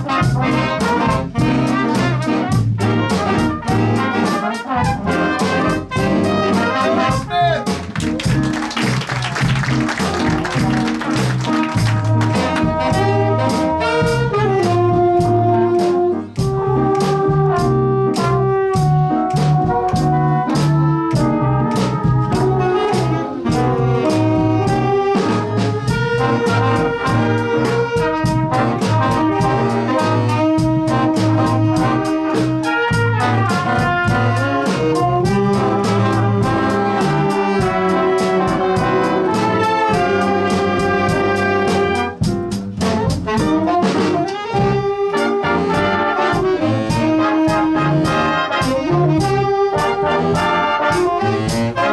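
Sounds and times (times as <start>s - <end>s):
brass and saxophone chords: 0.0s - 51.9s
drum beat: 0.0s - 51.9s.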